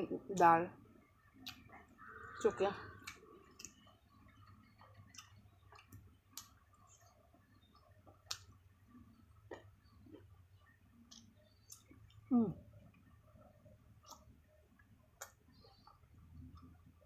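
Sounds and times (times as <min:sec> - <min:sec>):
faint eating clicks and smacks: 0:00.2 - 0:17.0.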